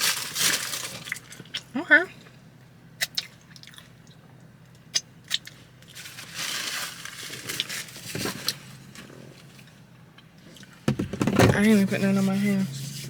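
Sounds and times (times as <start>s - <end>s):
paper wrapper crinkling: 0.0s - 1.2s, 5.9s - 8.1s
dull knock: 10.9s - 11.6s.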